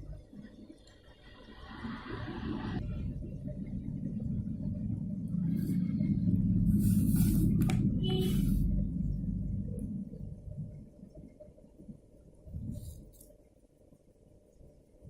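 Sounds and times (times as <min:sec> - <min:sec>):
low rumble: 0:01.5 - 0:13.0.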